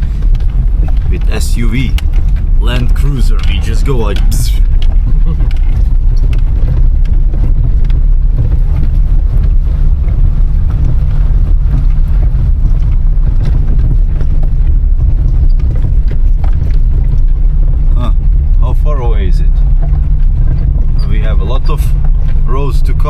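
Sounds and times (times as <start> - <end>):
car engine and road noise: 0.0 - 23.0
knocks and rattles from bumps: 19.4 - 22.5.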